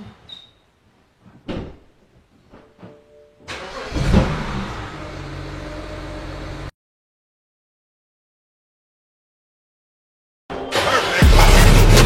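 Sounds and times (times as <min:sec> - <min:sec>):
thump: 0:01.5 - 0:01.8
car engine starting and idling: 0:03.5 - 0:06.7.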